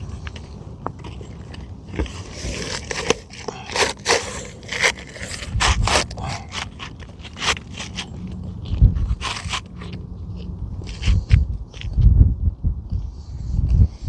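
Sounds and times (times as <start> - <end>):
roofing shingle scraping: 0.0 - 11.9.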